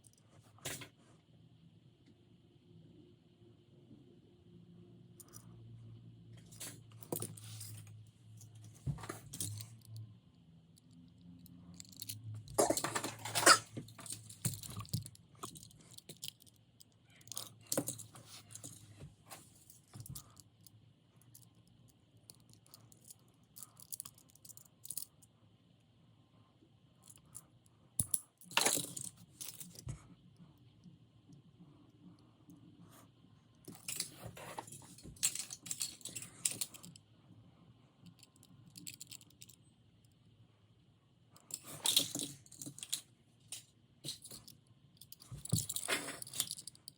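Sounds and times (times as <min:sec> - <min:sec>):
toy cars clicking and clinking: 0:10.8 - 0:16.6
toy cars clattering: 0:11.7 - 0:16.5.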